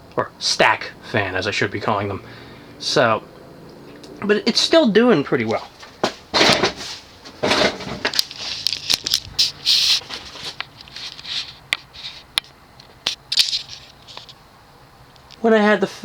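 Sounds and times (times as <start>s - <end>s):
rustling close to microphone: 5.5s - 14.4s.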